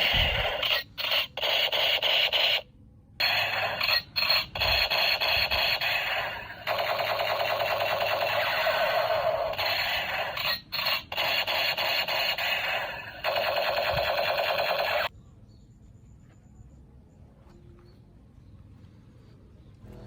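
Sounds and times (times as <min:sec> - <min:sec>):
toy gun electronic firing rattle: 0:00.0 - 0:15.1.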